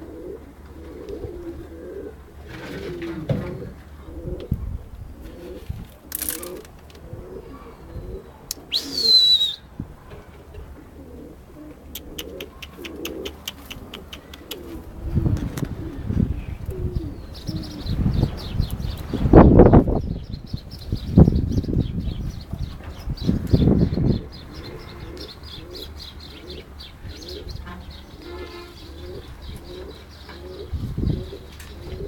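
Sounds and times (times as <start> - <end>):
pigeons cooing: 0.0 - 32.0
quick ticks: 11.9 - 14.7.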